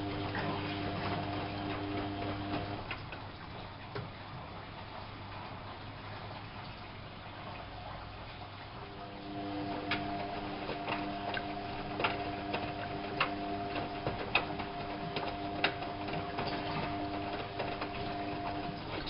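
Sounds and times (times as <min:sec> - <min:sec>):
washing machine drum humming: 0:00.0 - 0:19.0
tumbling load clicking and knocking: 0:09.9 - 0:19.0.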